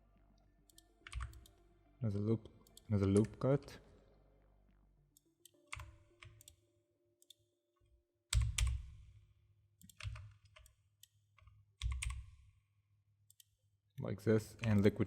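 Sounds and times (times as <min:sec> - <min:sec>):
keyboard keystrokes: 0:08.4 - 0:09.0, 0:11.8 - 0:12.4.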